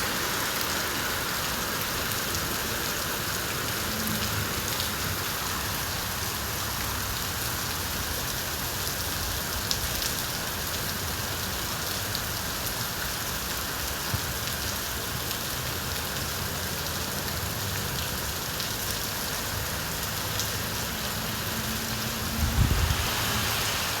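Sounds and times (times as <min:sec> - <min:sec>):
steady rain falling: 0:00.0 - 0:24.0
low rumble: 0:22.3 - 0:24.0.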